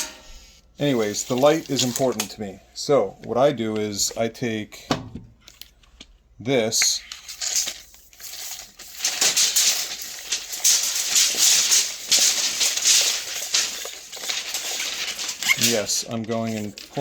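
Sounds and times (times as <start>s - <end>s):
tape measure blade rattling out: 7.2s - 17.0s.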